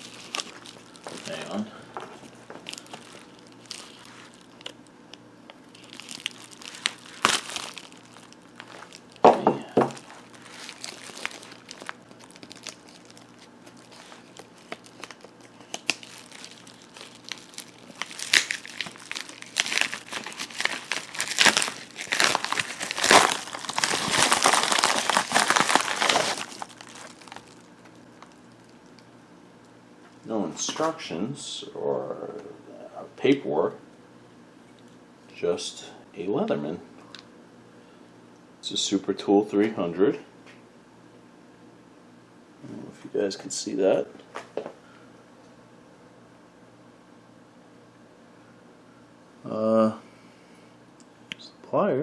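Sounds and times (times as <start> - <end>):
packaging crinkling and tearing: 0.0 - 4.9, 5.6 - 29.0.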